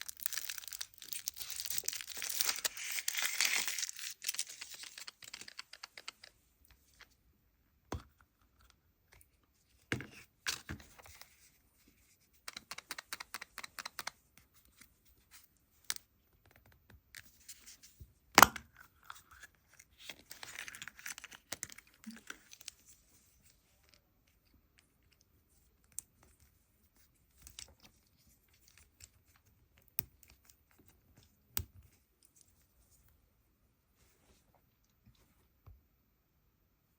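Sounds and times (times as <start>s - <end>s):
foil wrapper tearing and crinkling: 0.0s - 5.6s.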